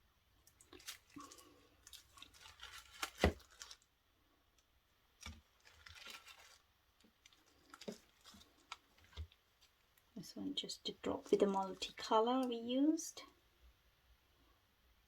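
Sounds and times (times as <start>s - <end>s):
small clicks and rustles: 0.4s - 3.9s, 4.6s - 10.1s.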